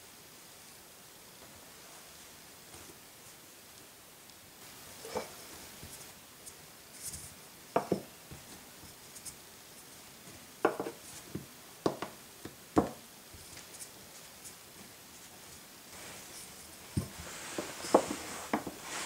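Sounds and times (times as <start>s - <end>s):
knocks and taps on work surface: 7.8s - 8.1s, 10.6s - 11.0s, 11.8s - 12.2s, 12.8s - 13.0s.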